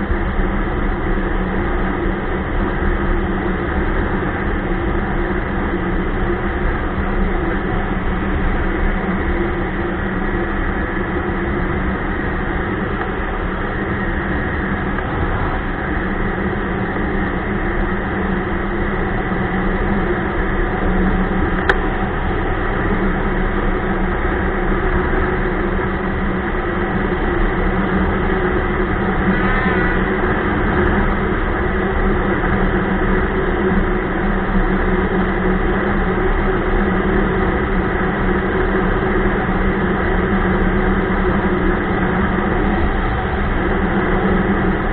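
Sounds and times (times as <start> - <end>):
snowmobile track noise: 10.6 - 44.9.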